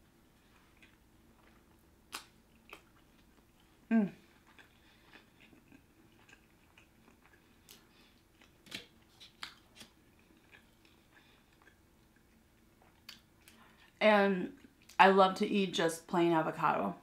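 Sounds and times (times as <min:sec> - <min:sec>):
faint chewing: 0:00.3 - 0:15.0
wet mouth clicks and smacks: 0:02.1 - 0:02.9.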